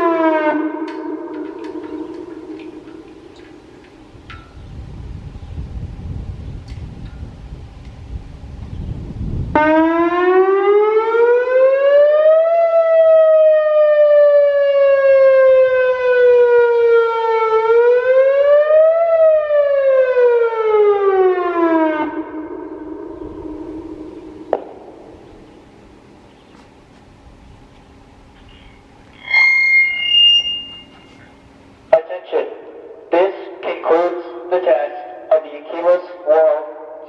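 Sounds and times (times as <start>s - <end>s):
electronic siren rising and falling: 0.0s - 4.2s, 9.5s - 24.7s, 29.1s - 31.3s.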